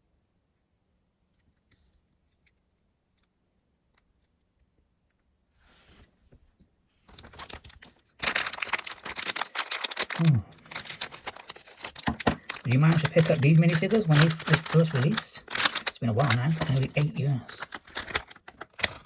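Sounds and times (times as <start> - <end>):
plastic foil crinkling: 7.1 - 19.0.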